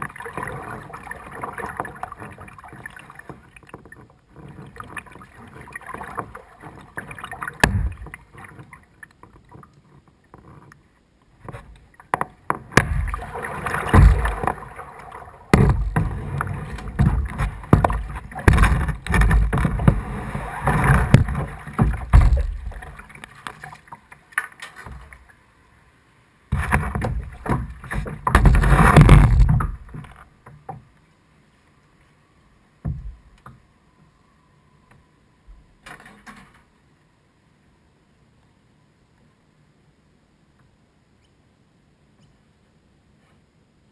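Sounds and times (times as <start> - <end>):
kayak paddle splashing: 0.0 - 25.5, 26.5 - 30.4.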